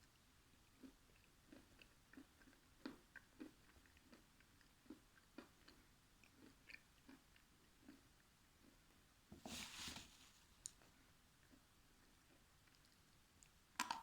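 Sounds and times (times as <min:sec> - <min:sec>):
person chewing: 0:00.7 - 0:08.8.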